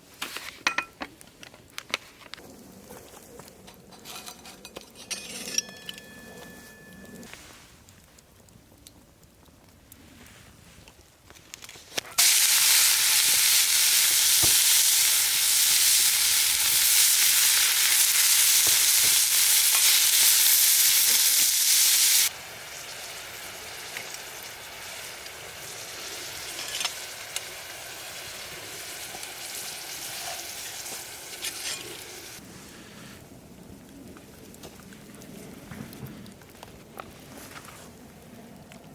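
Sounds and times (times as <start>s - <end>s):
pops and crackles: 7.2s - 12.3s
food sizzling in a pan: 12.2s - 32.4s.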